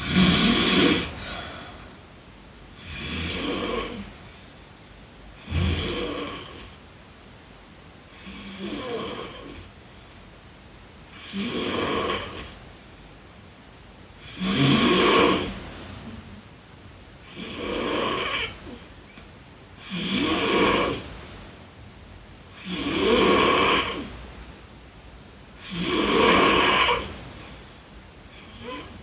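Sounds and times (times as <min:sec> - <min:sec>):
girl snoring: 0:00.0 - 0:02.0, 0:02.8 - 0:04.3, 0:05.4 - 0:06.8, 0:08.1 - 0:09.7, 0:11.1 - 0:12.6, 0:14.2 - 0:16.3, 0:17.2 - 0:18.9, 0:19.8 - 0:21.1, 0:22.5 - 0:24.2, 0:25.6 - 0:27.6, 0:28.3 - 0:29.0.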